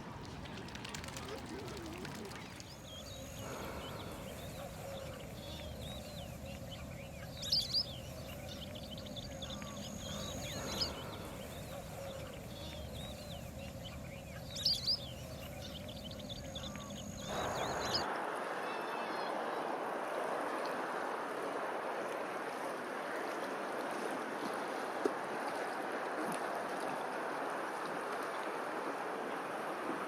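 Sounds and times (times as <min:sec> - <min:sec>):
birds chirping: 0:00.0 - 0:19.5
outdoor background noise: 0:00.0 - 0:30.0.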